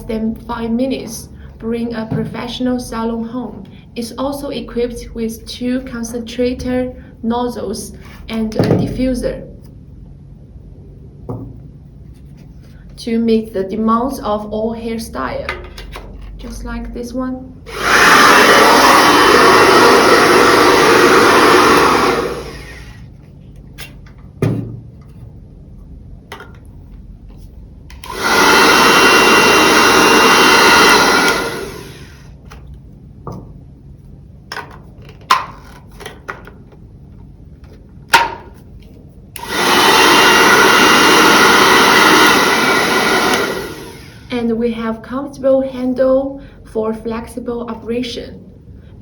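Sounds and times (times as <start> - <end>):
hair dryer blowing: 17.7 - 23.1, 27.9 - 32.4, 39.4 - 44.3.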